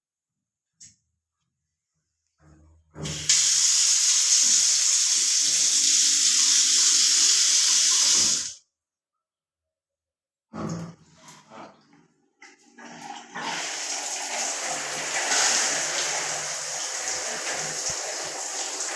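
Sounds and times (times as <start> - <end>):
water spraying from shower jets: 3.0 - 8.6, 13.4 - 18.9.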